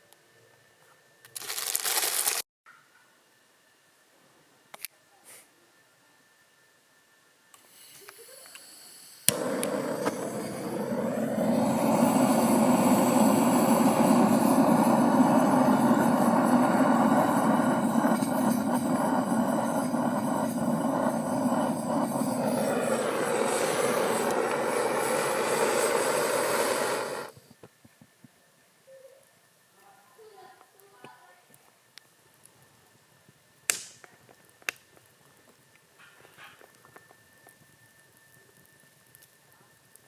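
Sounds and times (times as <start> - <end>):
small motor whirring: 8.0 - 27.3.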